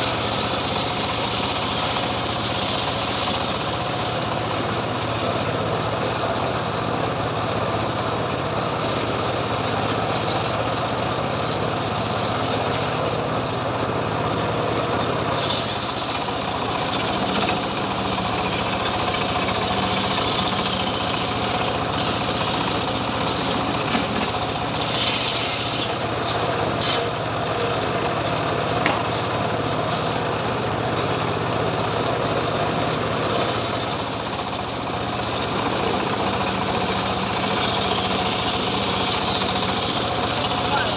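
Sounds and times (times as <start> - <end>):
saw blade cutting wood: 0.0 - 4.4, 15.2 - 27.2, 33.3 - 40.9
sawmill engine running: 0.0 - 40.9.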